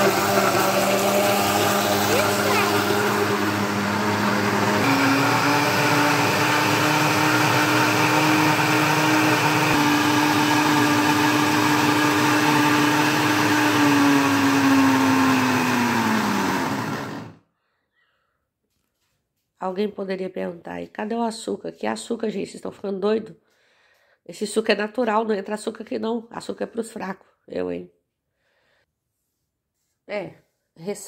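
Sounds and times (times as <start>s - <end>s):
blender motor running: 0.0s - 17.4s.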